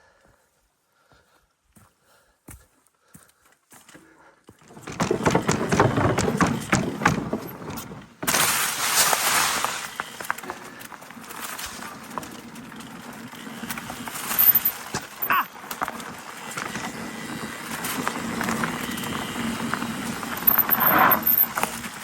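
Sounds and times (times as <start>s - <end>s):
bike clicking and rattling: 4.5s - 22.0s
bike tyres rolling on dirt: 4.5s - 22.0s.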